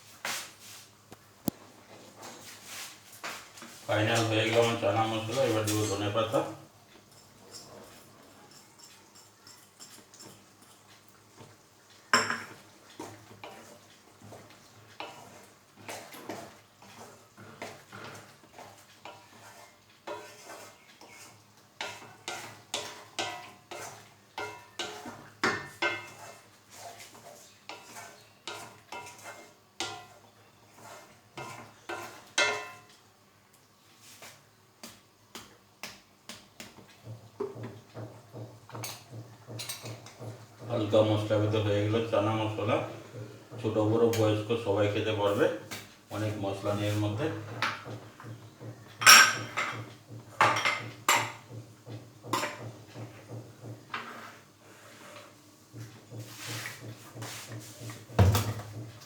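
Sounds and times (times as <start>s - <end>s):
spatula scraping a pan: 1.8s - 33.0s, 46.1s - 59.0s.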